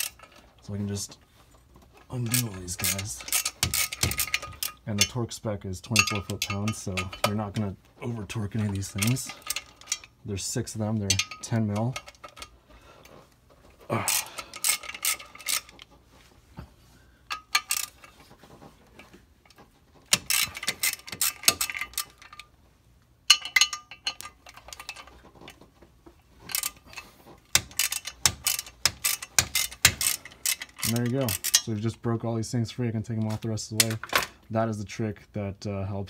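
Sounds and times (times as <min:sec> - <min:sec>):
ratchet wrench clicking: 0:02.2 - 0:05.2, 0:14.1 - 0:15.8, 0:17.3 - 0:18.0, 0:20.1 - 0:22.4, 0:26.5 - 0:26.9, 0:27.5 - 0:31.7
person grunting: 0:13.9 - 0:14.4.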